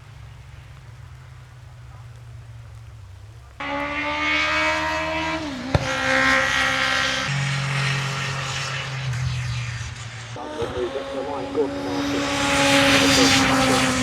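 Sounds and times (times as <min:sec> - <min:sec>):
racing car engine high pitch: 0:03.6 - 0:14.0.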